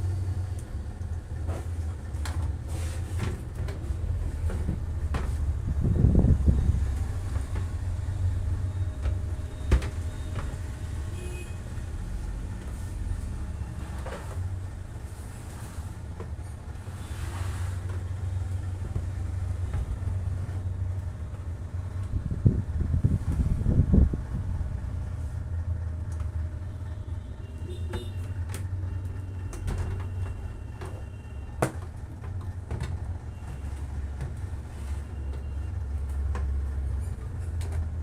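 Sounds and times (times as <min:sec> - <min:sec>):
steady low rumble: 0:03.4 - 0:09.5, 0:18.0 - 0:27.0.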